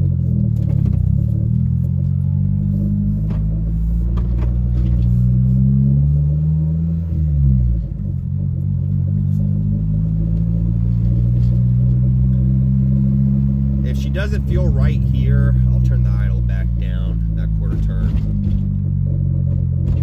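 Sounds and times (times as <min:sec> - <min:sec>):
car engine pulling: 0:00.0 - 0:20.0.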